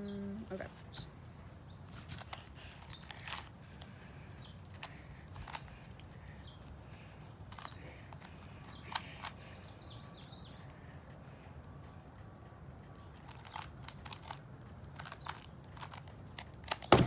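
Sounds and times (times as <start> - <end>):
plastic puzzle clicks and clacks: 1.9 - 3.5, 7.5 - 9.4, 13.0 - 17.0.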